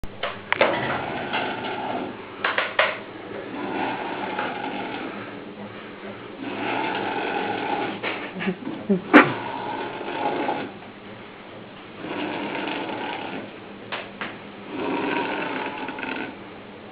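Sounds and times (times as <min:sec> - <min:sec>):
person snoring: 0:03.4 - 0:05.4, 0:06.4 - 0:08.2, 0:09.0 - 0:10.8, 0:12.0 - 0:13.5, 0:14.7 - 0:16.4.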